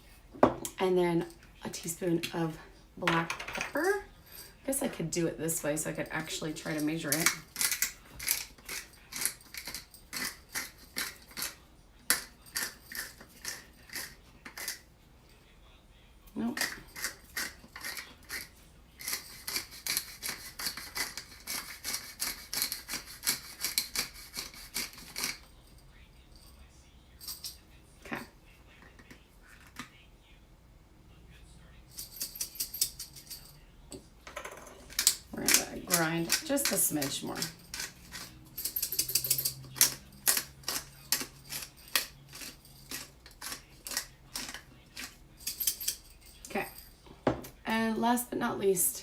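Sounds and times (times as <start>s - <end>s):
pepper mill grinding: 6.1s - 14.8s, 16.5s - 25.6s, 31.9s - 33.6s, 34.8s - 46.8s.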